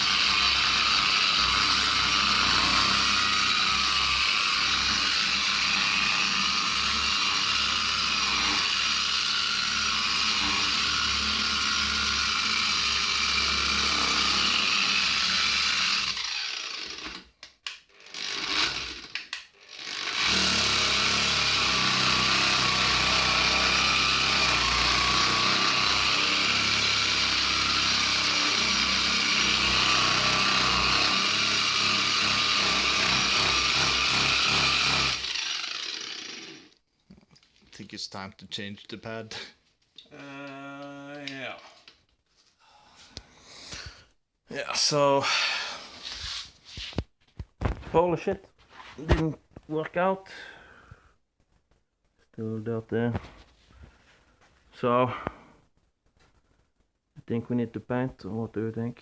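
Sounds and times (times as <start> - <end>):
angle grinder polishing: 0.0 - 17.2, 18.0 - 36.7.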